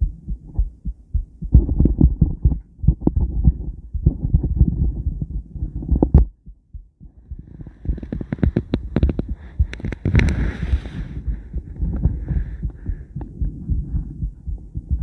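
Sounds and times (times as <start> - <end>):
ultrasound heartbeat: 0.0 - 15.0
sharp clicks: 7.9 - 10.4.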